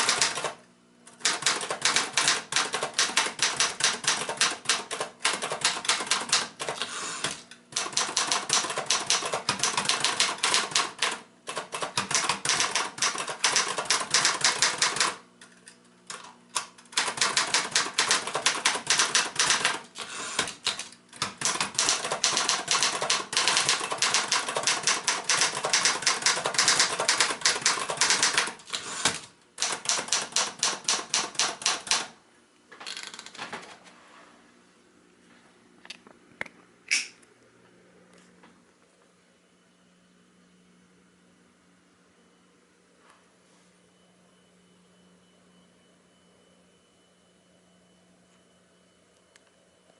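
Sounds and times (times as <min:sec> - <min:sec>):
typewriter key strikes: 0:00.0 - 0:00.5, 0:01.2 - 0:06.8, 0:07.8 - 0:15.2, 0:16.1 - 0:19.8, 0:20.4 - 0:32.1.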